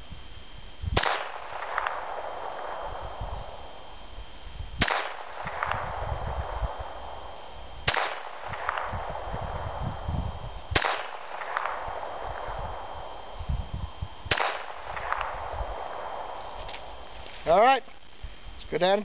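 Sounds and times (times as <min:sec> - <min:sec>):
pistol shots: 0:01.0 - 0:03.8, 0:04.8 - 0:09.6, 0:10.7 - 0:12.9, 0:14.3 - 0:17.1.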